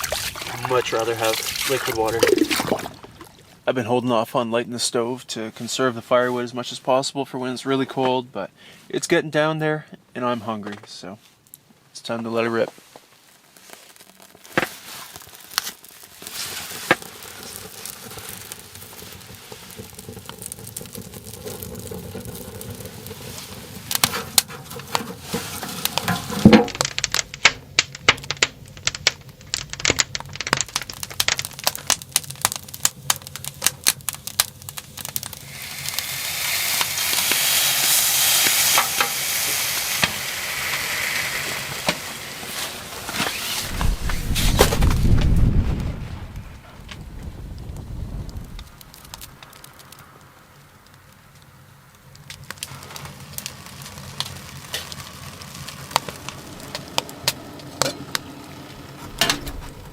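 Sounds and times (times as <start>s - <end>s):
kindling crackling and popping: 0.0s - 4.0s, 11.4s - 59.9s
food sizzling in a frying pan: 13.7s - 28.1s, 30.9s - 43.8s, 52.6s - 59.9s
loud scrape: 21.0s - 26.8s, 38.6s - 46.6s.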